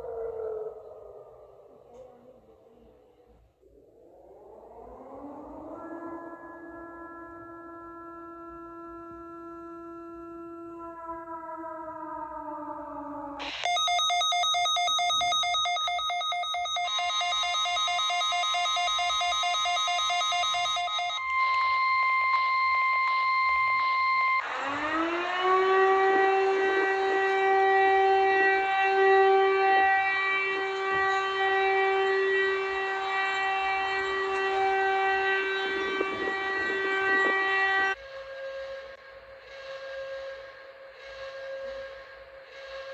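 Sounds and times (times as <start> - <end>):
civil defence siren wailing: 0.0 - 42.9
falling multi-tone alarm: 3.8 - 42.9
rapid electronic pulsing alarm: 3.8 - 42.9
steady beeping tones: 13.4 - 24.4.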